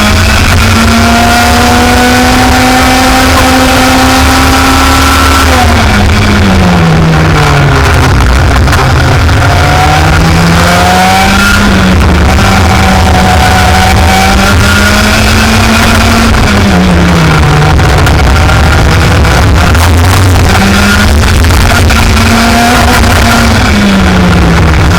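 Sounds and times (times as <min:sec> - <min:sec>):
heavy low rumble: 0:00.0 - 0:24.9
racing kart engine revving: 0:00.0 - 0:24.9.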